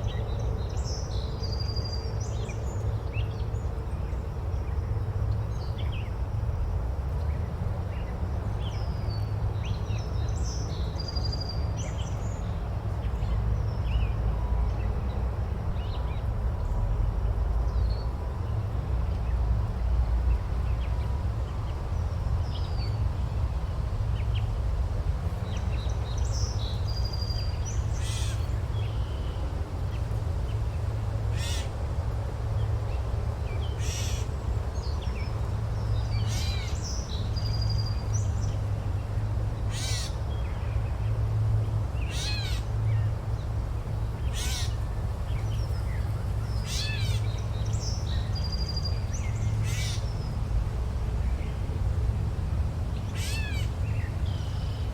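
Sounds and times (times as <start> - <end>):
birds calling: 26.3 - 29.4, 31.3 - 31.7, 39.7 - 40.5, 42.0 - 43.0, 44.2 - 50.2, 53.0 - 54.9.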